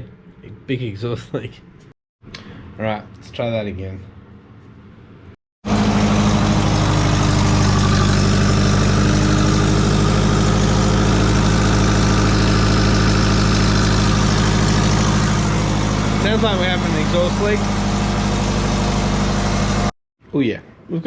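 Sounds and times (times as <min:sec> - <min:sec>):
car engine idling: 0:05.7 - 0:19.9.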